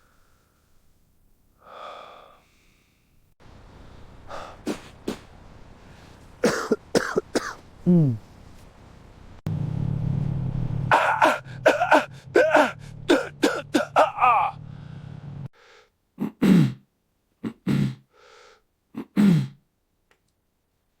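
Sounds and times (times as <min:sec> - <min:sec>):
low steady hum: 0:05.3 - 0:15.5
person coughing: 0:06.4 - 0:08.2, 0:10.9 - 0:14.5, 0:16.2 - 0:16.8, 0:17.4 - 0:18.0, 0:19.0 - 0:19.6.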